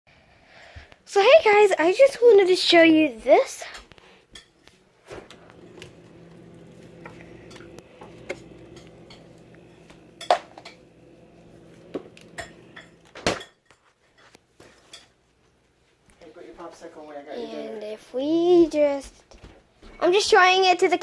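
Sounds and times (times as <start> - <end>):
steady low hum: 5.3 - 13.2
hard objects clinking: 5.6 - 13.4.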